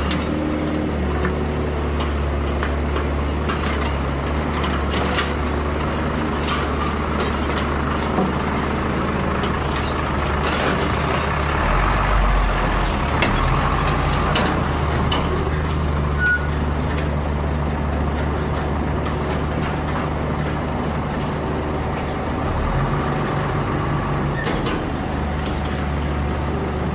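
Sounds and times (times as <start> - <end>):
excavator diesel engine droning: 0.0 - 26.9
clanks and knocks: 6.4 - 8.7, 12.9 - 15.8, 24.4 - 25.8.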